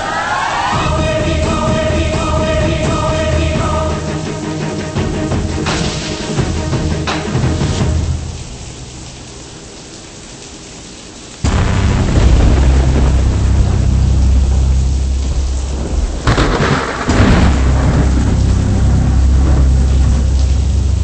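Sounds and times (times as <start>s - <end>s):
steady rain hiss: 0.0s - 21.0s
thunderclap rolling into rumble: 11.4s - 21.0s.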